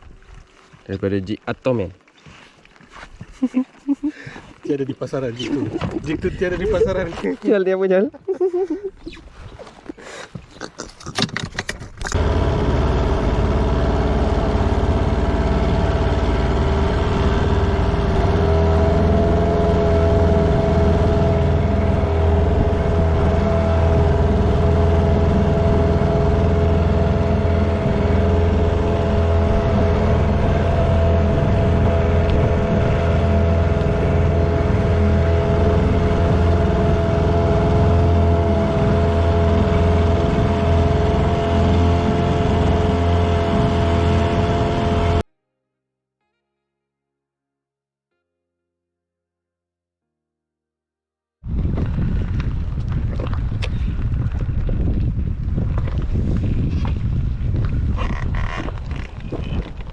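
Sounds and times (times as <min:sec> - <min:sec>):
engine humming: 0:12.0 - 0:45.2.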